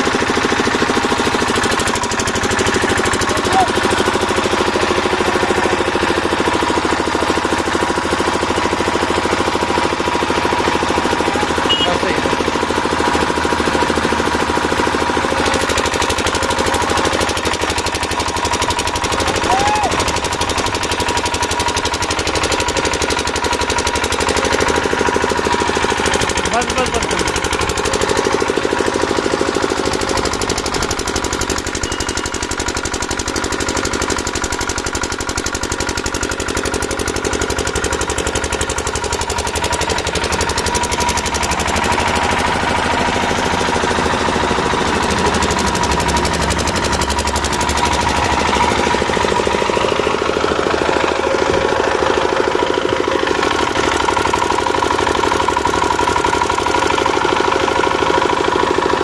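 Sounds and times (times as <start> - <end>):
hammer drill running: 0.0 - 59.0.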